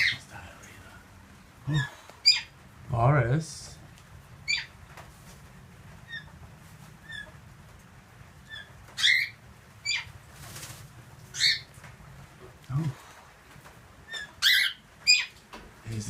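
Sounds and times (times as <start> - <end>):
cockatoos squawking: 0.0 - 0.3, 1.7 - 2.6, 4.4 - 4.8, 8.4 - 10.2, 11.3 - 11.7, 14.0 - 15.4
rustle of feathers: 3.5 - 16.0.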